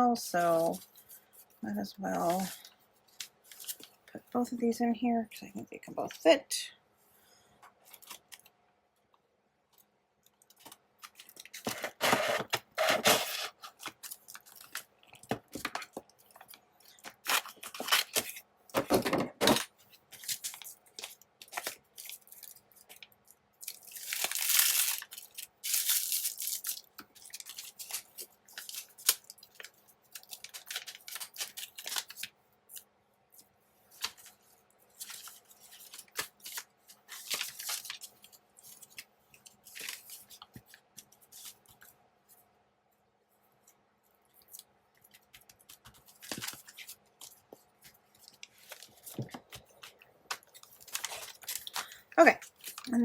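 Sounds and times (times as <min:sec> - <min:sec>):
paper crackling and tearing: 0:23.7 - 0:32.3, 0:35.0 - 0:38.1.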